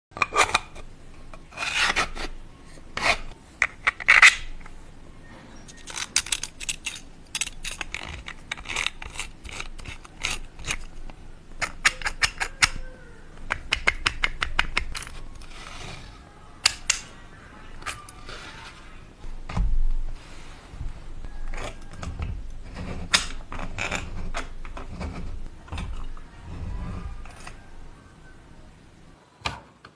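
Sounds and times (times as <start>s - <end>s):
hard plastic clicking and clacking: 13.4s - 15.5s.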